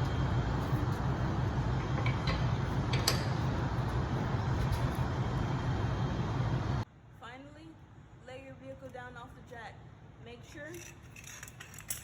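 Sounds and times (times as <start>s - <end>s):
steady low rumble: 0.0s - 6.9s.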